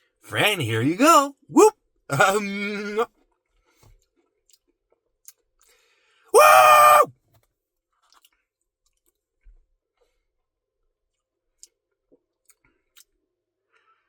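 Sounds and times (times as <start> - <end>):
man whooping: 0.3 - 3.1, 6.4 - 7.1.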